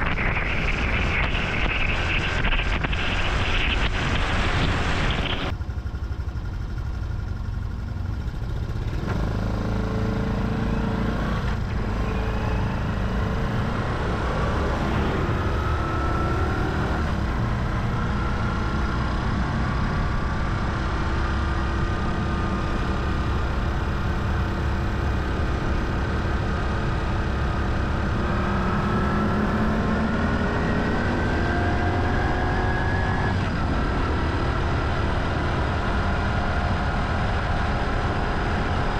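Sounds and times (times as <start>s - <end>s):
motorcycle engine running: 0.0s - 11.0s
wind and road noise: 0.0s - 38.9s.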